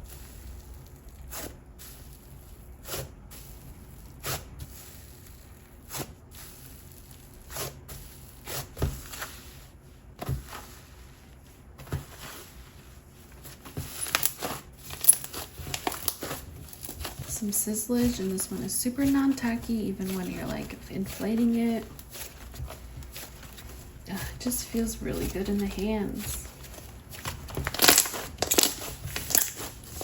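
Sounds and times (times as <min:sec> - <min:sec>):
slime squelching: 0:00.1 - 0:30.0
slime crackling: 0:13.8 - 0:17.4, 0:18.0 - 0:30.0.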